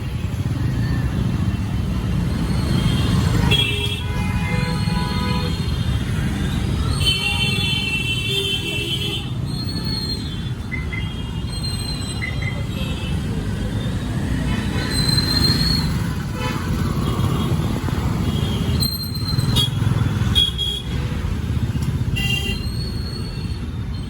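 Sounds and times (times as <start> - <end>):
street traffic rumble: 0.0 - 24.0
vehicle horns honking: 2.8 - 5.9, 22.1 - 22.7.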